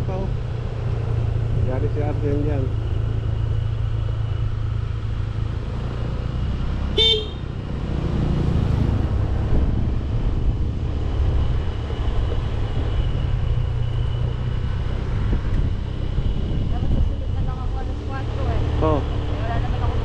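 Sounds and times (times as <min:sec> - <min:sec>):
motorcycle engine rumble: 0:00.0 - 0:20.0
vehicle horn toot: 0:07.0 - 0:07.5.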